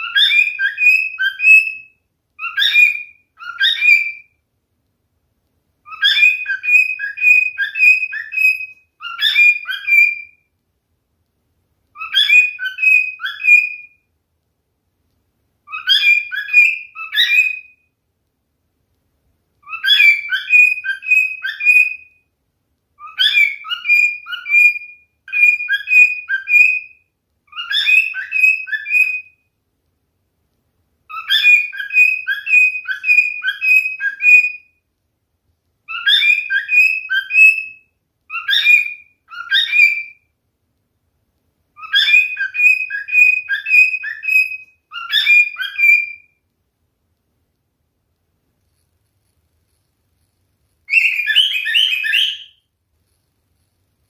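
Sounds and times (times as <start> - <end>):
cockatiel whistling song: 0.0 - 4.4, 5.8 - 10.5, 11.9 - 14.1, 15.6 - 17.9, 19.6 - 22.3, 23.0 - 29.6, 31.0 - 34.8, 35.8 - 40.3, 41.7 - 46.4, 50.8 - 52.7.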